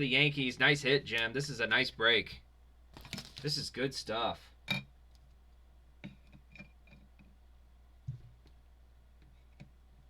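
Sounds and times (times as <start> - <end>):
cards clicking and tapping: 3.0 - 3.6.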